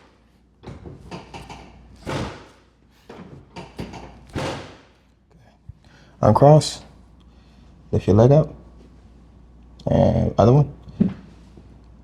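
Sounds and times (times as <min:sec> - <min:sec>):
thumps of chiropractic adjustment: 0:00.6 - 0:04.9.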